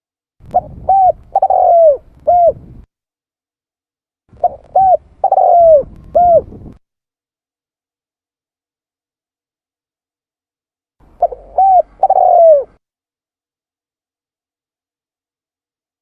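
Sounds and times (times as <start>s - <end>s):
dove cooing: 0.5s - 2.8s, 4.4s - 6.8s, 11.1s - 12.8s.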